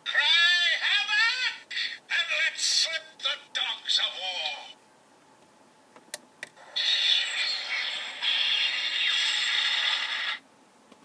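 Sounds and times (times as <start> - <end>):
harsh grinding electronic sound effect: 6.6 - 10.4.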